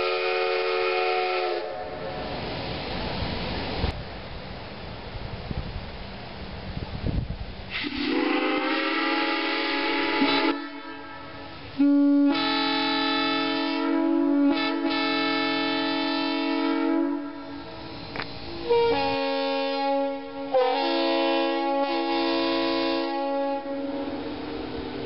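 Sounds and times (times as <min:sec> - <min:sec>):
train whistle blasts: 0:00.0 - 0:02.2, 0:07.7 - 0:25.0.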